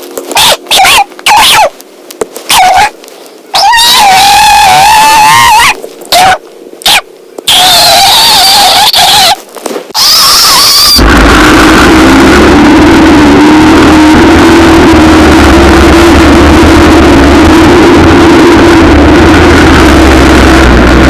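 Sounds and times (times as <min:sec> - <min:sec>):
high-pitched squeals: 0:02.5 - 0:21.0
engine-like running noise: 0:10.6 - 0:21.0.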